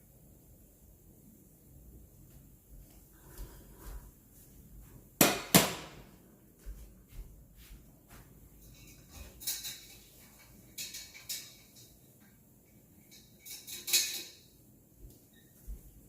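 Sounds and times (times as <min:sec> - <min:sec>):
cookware clattering and scraping: 0:08.6 - 0:12.2, 0:13.0 - 0:14.6.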